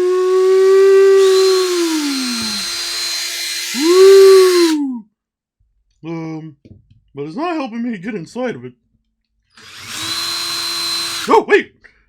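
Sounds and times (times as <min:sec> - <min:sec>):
electric drill motor whine: 0:00.0 - 0:04.8, 0:09.6 - 0:11.3
drill bit grinding on metal: 0:00.6 - 0:04.8, 0:09.6 - 0:11.3.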